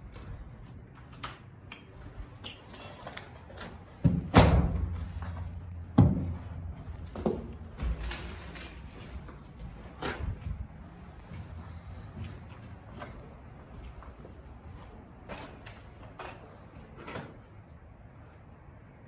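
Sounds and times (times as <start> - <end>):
soft knocks and scuffs: 3.4 - 17.4.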